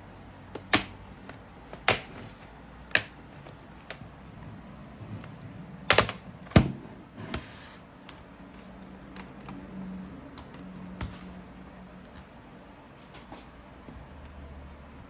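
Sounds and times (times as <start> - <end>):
laptop clicks and taps: 0.5 - 4.0.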